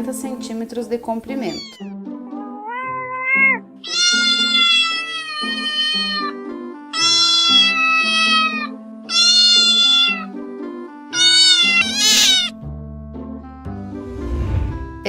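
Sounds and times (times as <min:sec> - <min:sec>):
soft background music: 0:00.0 - 0:15.0
cat meowing: 0:01.3 - 0:10.4, 0:11.1 - 0:12.6.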